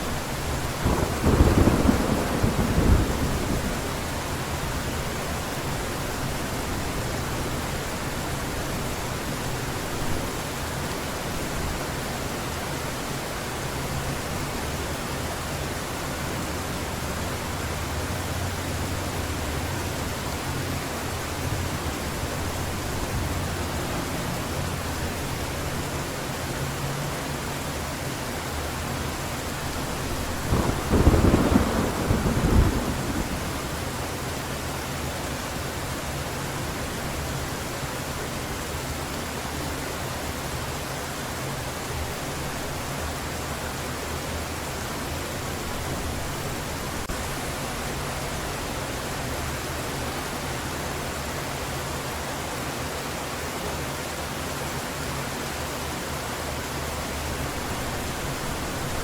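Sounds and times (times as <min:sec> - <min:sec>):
heavy rain hissing: 0:00.0 - 0:59.0
thunder rumble: 0:00.5 - 0:04.8, 0:29.8 - 0:34.2.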